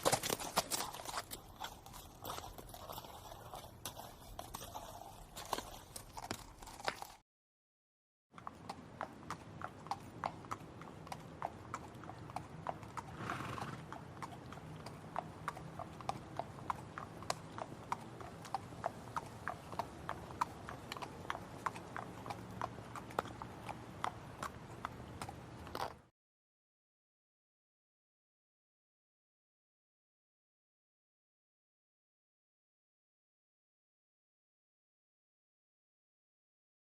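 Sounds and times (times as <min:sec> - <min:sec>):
horse hooves clip-clopping: 0:00.0 - 0:07.2, 0:08.4 - 0:26.1.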